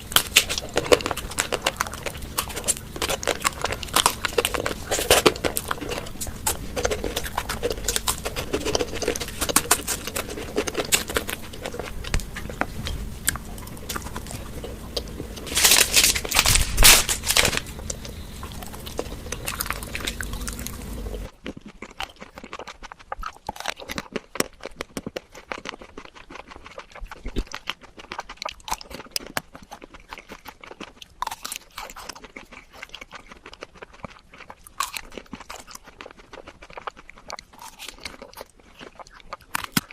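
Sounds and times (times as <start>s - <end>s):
steady background noise: 0.0s - 21.4s
person chewing crunchy sweets: 0.0s - 39.9s.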